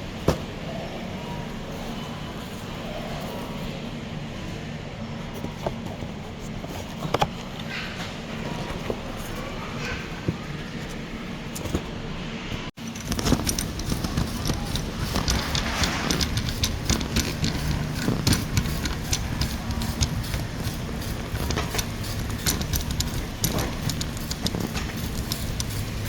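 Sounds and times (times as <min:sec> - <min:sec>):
steady low hum: 0:00.0 - 0:26.0
shopping cart clattering: 0:12.8 - 0:26.0.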